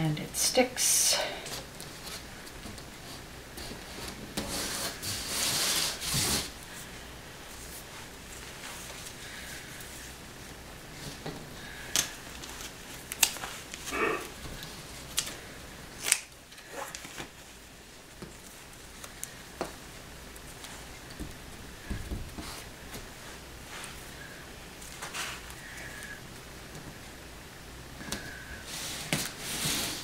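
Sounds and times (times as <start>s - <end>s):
tape rustling: 11.1s - 24.1s.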